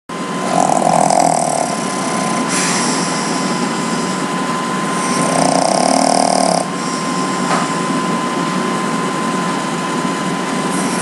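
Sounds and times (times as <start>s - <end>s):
pet snoring: 0.4s - 7.5s, 10.7s - 11.0s.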